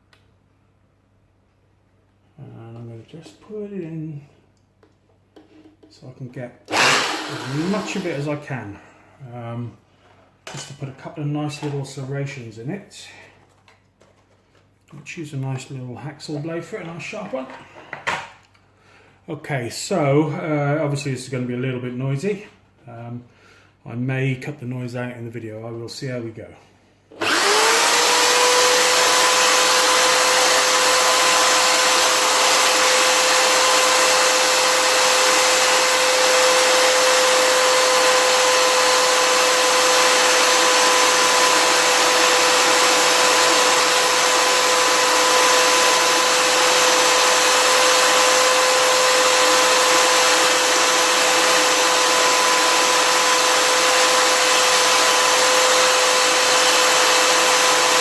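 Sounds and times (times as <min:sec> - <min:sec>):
electric drill whining: 0:06.7 - 0:08.3, 0:27.1 - 0:58.0.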